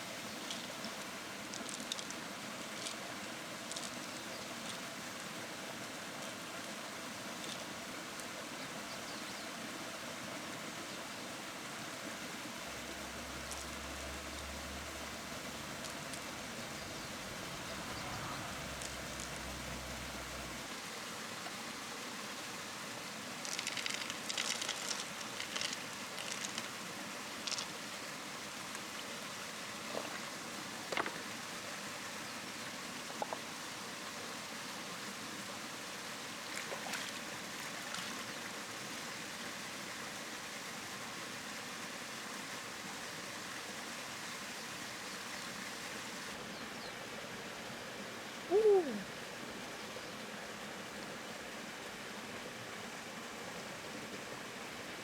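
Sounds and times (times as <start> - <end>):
water hissing: 12.5 - 20.7.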